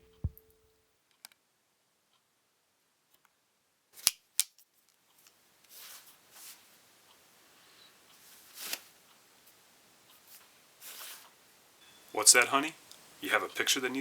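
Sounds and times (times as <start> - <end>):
soft rustling: 4.8 - 11.5.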